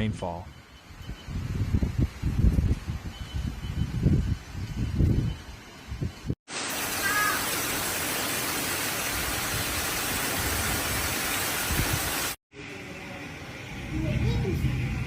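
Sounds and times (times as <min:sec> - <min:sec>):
wind gusts rumbling: 0:01.2 - 0:06.3
heavy driving rain: 0:06.5 - 0:12.4.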